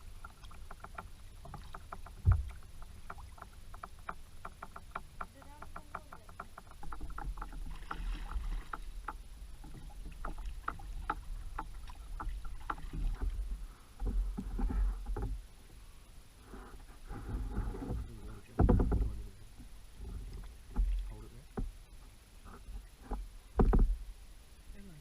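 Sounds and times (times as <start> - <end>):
paddle water drips and splashes: 0.0 - 24.6.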